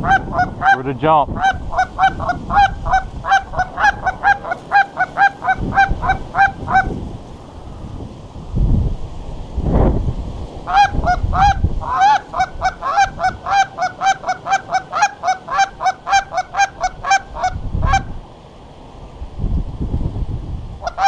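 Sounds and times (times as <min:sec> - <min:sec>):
goose honking: 0:00.0 - 0:07.0, 0:10.7 - 0:18.1
wind buffeting microphone: 0:00.0 - 0:21.0.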